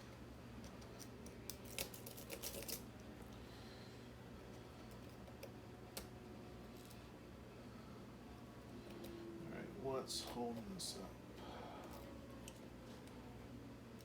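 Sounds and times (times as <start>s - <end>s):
lock picks clicking and scraping: 0.6s - 2.8s.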